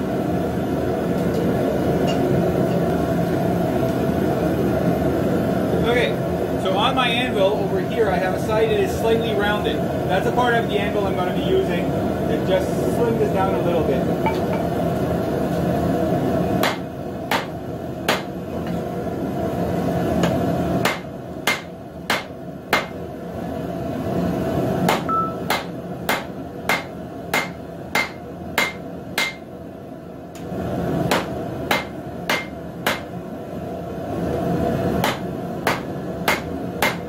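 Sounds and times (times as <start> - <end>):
hammer striking steel on anvil: 20.8 - 23.0, 24.9 - 29.4, 31.1 - 33.1.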